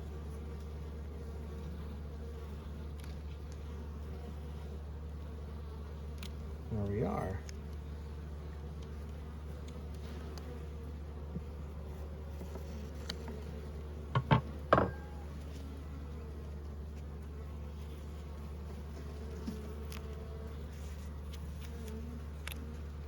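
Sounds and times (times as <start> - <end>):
bees buzzing: 0.0 - 23.0
knocks: 14.1 - 15.1.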